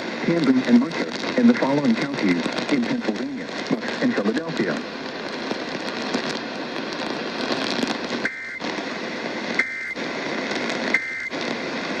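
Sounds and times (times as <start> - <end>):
radio static: 0.0 - 12.0
two-tone data bursts: 8.2 - 8.7, 9.5 - 10.0, 10.9 - 11.4.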